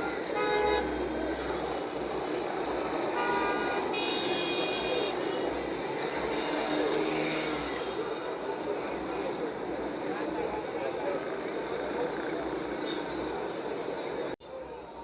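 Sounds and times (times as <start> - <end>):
car horns tooting: 0.0 - 1.0, 3.1 - 5.5
road traffic: 0.0 - 15.0.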